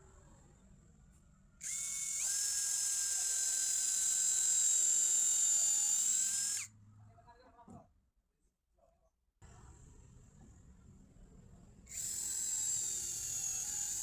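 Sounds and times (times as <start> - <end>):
electric drill motor whining: 1.6 - 6.7, 11.9 - 14.0.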